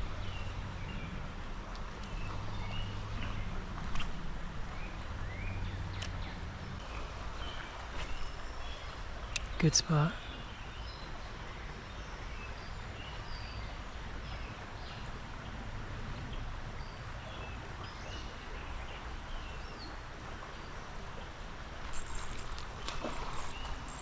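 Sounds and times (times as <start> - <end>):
creek water rushing: 0.0 - 24.0
small birds chirping: 0.2 - 15.1, 21.8 - 24.0
sharp clicks and rustling: 21.9 - 24.0.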